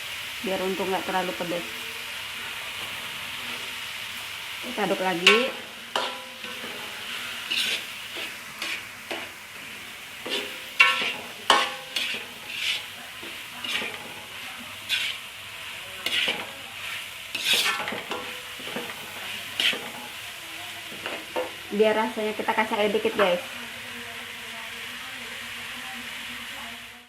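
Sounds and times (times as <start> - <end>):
squid sizzling in a pan: 0.0 - 27.0
spatula scraping and knocking pan: 4.6 - 15.3, 16.0 - 20.2, 20.9 - 21.6.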